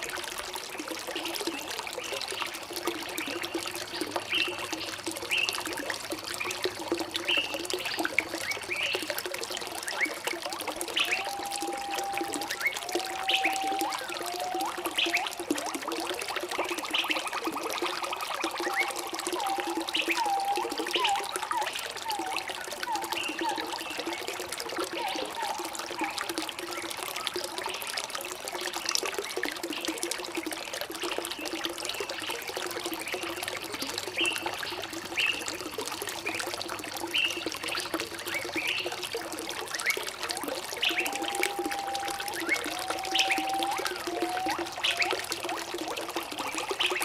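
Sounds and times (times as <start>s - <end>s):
water trickling: 0.0s - 47.0s
low whistled bird notes: 11.0s - 15.3s, 40.8s - 45.2s.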